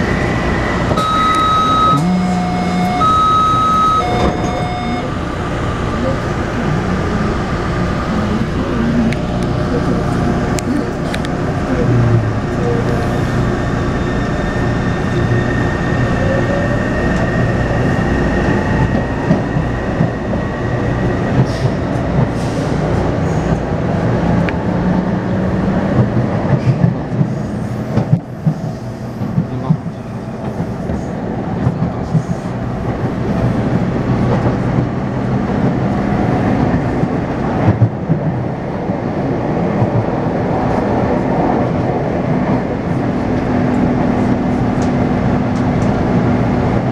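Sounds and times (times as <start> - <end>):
wheel and rail rumble: 0.0 - 46.9
wheels clickety-clack: 25.8 - 38.4.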